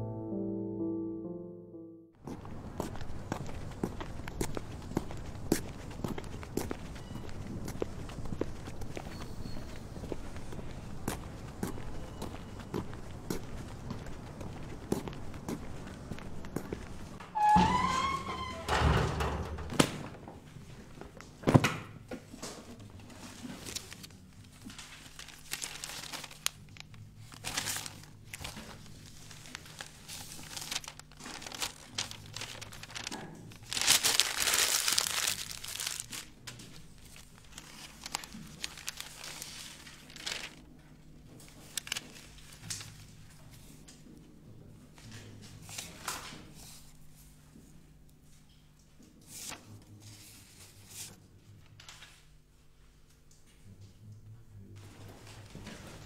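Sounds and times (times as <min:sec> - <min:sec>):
rustling and crinkling: 0:22.3 - 0:40.7, 0:41.3 - 0:44.0.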